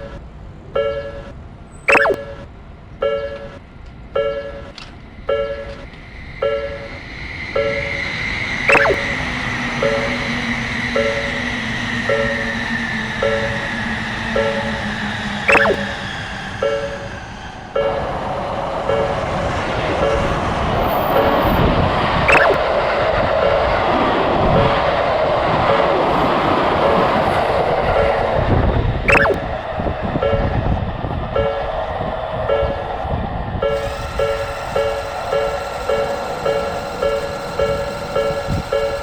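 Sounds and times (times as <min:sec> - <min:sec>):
brief sharp high sounds: 0:01.9 - 0:02.3, 0:08.7 - 0:09.2, 0:15.5 - 0:16.0, 0:22.3 - 0:22.6, 0:29.1 - 0:29.4
train wheels and motors rushing: 0:03.3 - 0:39.0
level-crossing bell dinging: 0:08.7 - 0:14.9, 0:16.6 - 0:17.1, 0:33.6 - 0:39.0.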